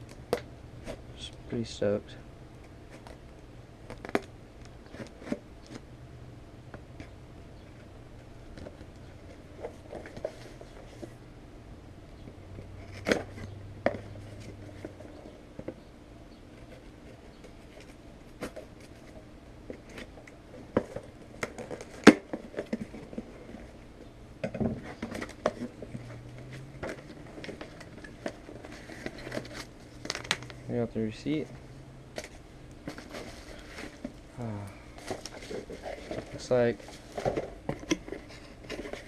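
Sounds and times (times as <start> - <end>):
package being opened by hand: 2.9 - 5.8, 17.7 - 23.3, 24.8 - 30.6.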